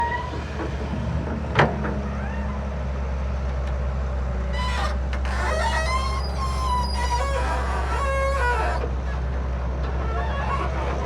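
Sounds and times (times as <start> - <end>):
excavator diesel engine running: 0.0 - 5.2.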